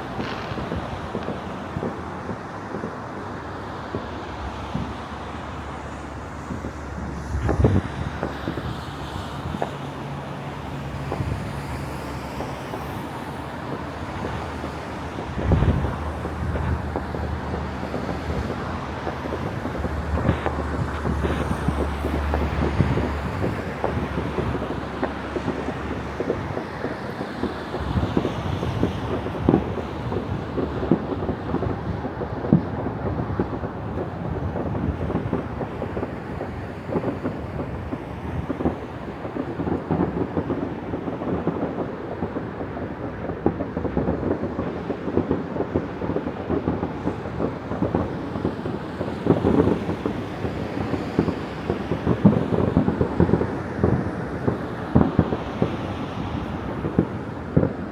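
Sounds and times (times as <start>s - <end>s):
loud single firework bangs: 0.0s - 5.6s
distant fireworks bangs and pops: 0.0s - 57.9s.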